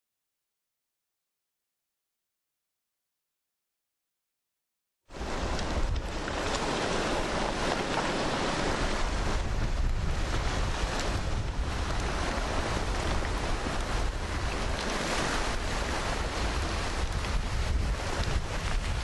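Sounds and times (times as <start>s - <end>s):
flood water rushing: 5.1s - 19.0s
wind buffeting microphone: 5.1s - 19.0s.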